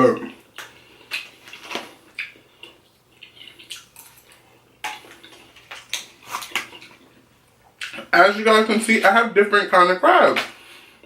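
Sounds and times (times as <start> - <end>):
chewing: 0.5 - 8.1.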